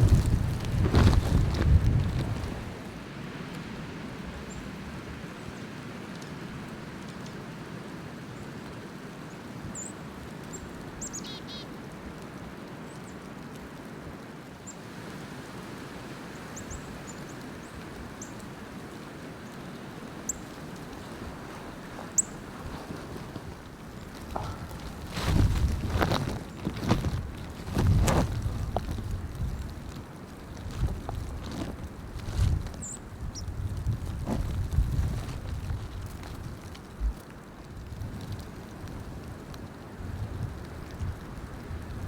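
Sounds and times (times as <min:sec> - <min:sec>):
blizzard wind: 0:00.0 - 0:05.6, 0:15.0 - 0:42.0
small birds chirping: 0:09.8 - 0:11.6, 0:16.3 - 0:33.7.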